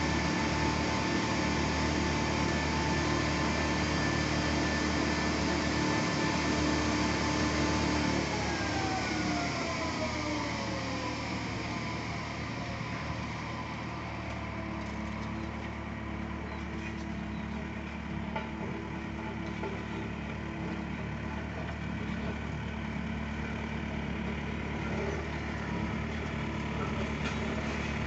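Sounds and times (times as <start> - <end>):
road roller engine droning: 0.0 - 28.0.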